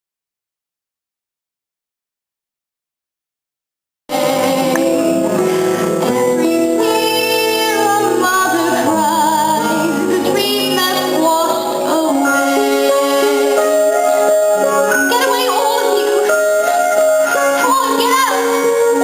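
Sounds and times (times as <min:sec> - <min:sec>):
girls singing: 0:04.1 - 0:13.6
instrumental accompaniment: 0:04.1 - 0:19.0.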